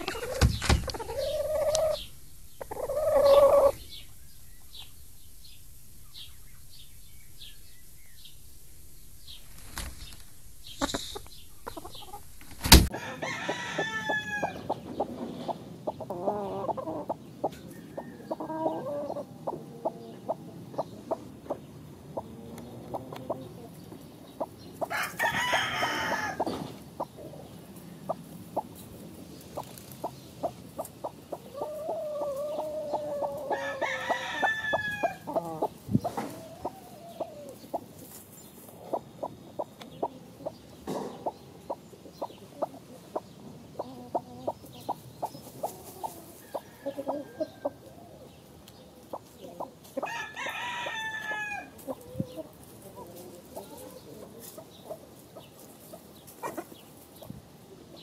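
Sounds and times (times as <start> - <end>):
chickens clucking: 0.0 - 8.2, 9.2 - 58.0
rooster crowing: 12.9 - 14.8, 24.9 - 26.6, 31.6 - 35.5, 46.4 - 47.9, 50.0 - 51.8.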